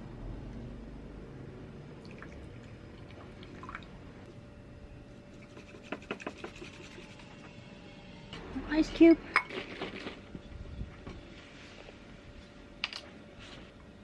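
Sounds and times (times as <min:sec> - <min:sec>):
water trickling into a bowl: 0:02.0 - 0:04.0.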